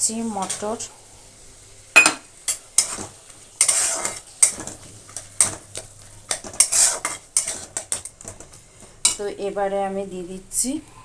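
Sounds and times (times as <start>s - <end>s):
faint sizzle: 0.0s - 11.0s
spatula scraping a pan: 2.5s - 9.3s.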